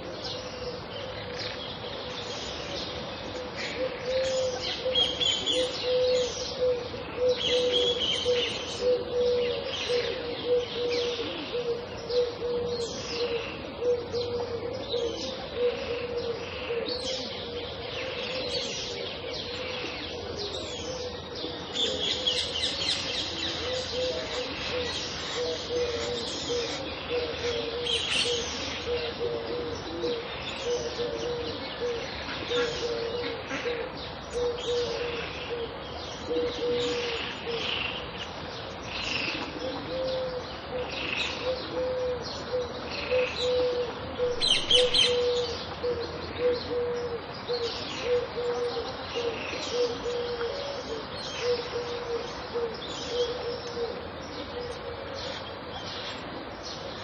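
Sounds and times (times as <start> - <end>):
birds chirping: 0.0 - 57.0
low repeating bird call: 38.7 - 57.0.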